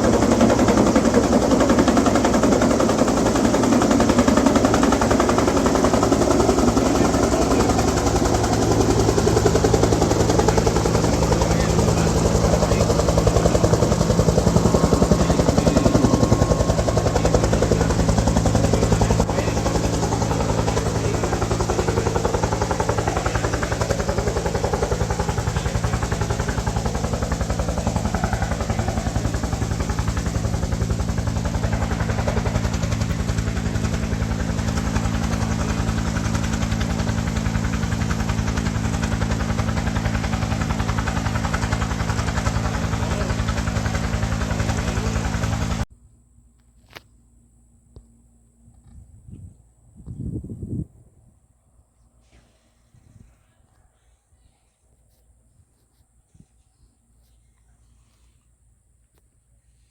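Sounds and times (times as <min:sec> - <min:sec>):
engine running steadily: 0:00.0 - 0:45.9.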